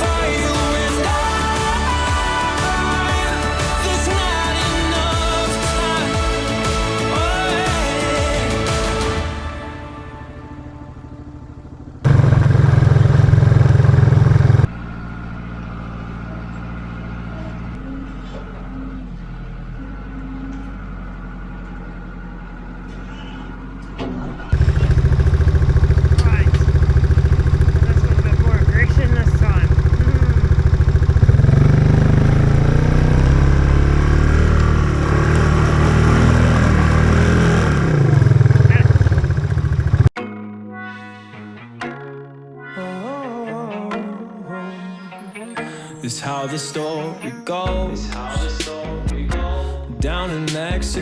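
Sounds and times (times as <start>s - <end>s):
farm vehicle engine running: 0.0s - 40.2s.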